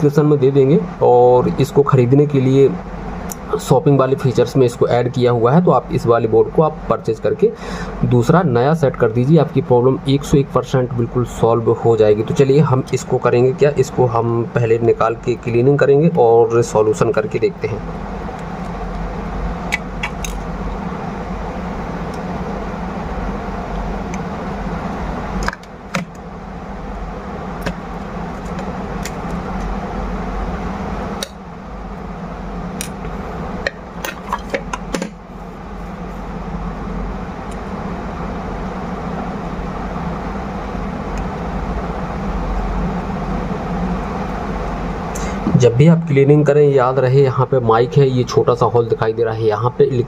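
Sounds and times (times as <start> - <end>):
steady mechanical hum: 0.0 - 50.0.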